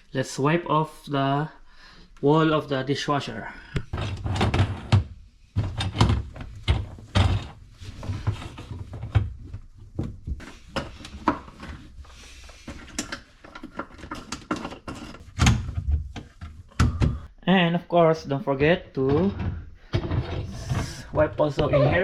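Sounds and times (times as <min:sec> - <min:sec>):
rag rubbing dishwasher tub: 0:20.1 - 0:22.0.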